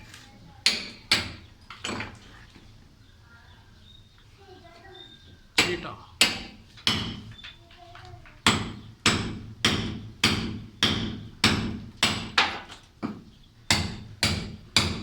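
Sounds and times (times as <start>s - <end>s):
hammer striking steel chisel: 13.0s - 15.0s.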